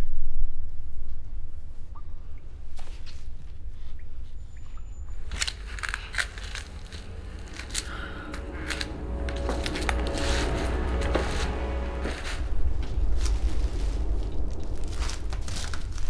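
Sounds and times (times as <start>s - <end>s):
steady low hum: 4.9s - 16.0s
crackling and clicking: 5.0s - 16.0s.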